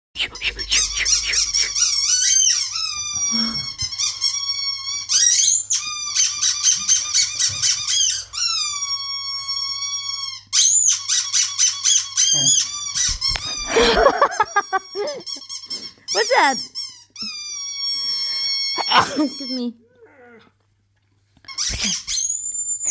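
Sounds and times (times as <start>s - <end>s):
squeaky dog toy squeaking: 0.8s - 13.9s, 14.5s - 19.8s, 21.5s - 22.9s
dog low sound: 19.9s - 20.6s.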